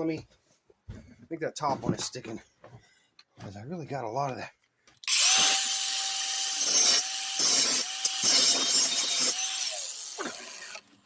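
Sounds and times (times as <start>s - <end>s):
power grinder grinding steel: 5.0s - 11.0s.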